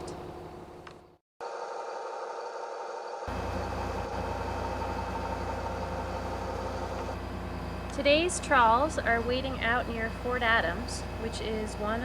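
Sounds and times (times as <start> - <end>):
boat engine running: 3.2 - 12.0.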